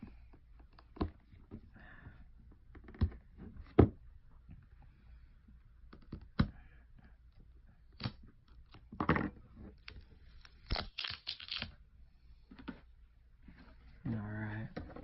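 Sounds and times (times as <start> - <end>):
screen protector peeling crackles: 9.9 - 11.8.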